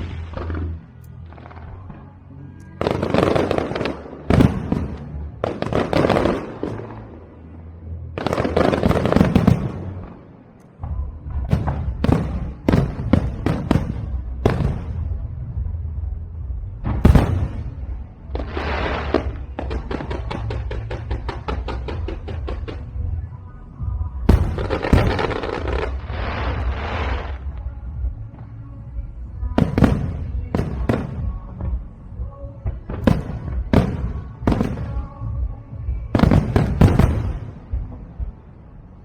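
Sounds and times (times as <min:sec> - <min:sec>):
fireworks crackling: 0:00.0 - 0:01.9, 0:02.8 - 0:07.1, 0:08.2 - 0:10.0, 0:11.5 - 0:23.2, 0:24.1 - 0:28.2, 0:32.9 - 0:38.4
fireworks booming bursts: 0:02.8 - 0:07.1, 0:08.2 - 0:10.2, 0:10.8 - 0:23.2, 0:23.8 - 0:28.2, 0:29.5 - 0:38.4.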